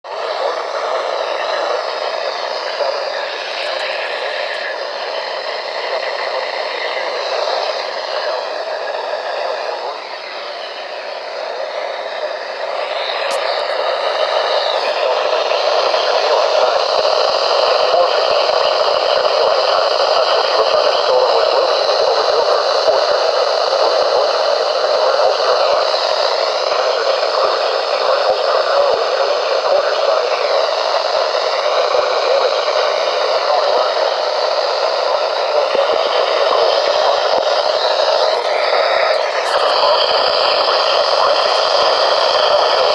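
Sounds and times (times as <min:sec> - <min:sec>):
radio static hiss: 0:00.0 - 0:42.9.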